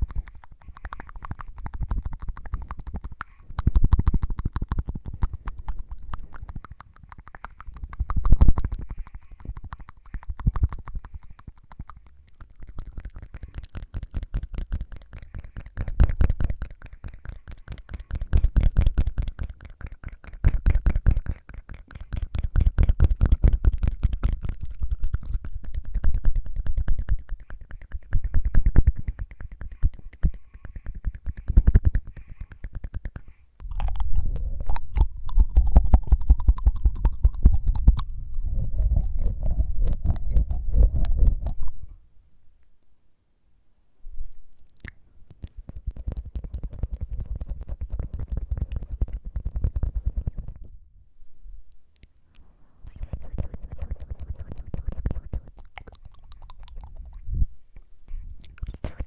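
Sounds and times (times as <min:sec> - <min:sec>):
rapid tongue fluttering: 0:00.0 - 0:41.9, 0:44.5 - 0:50.8, 0:51.7 - 0:59.0.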